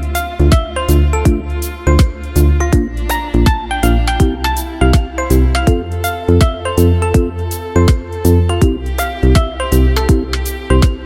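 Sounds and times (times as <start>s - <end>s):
electronic pop music: 0.0s - 11.0s.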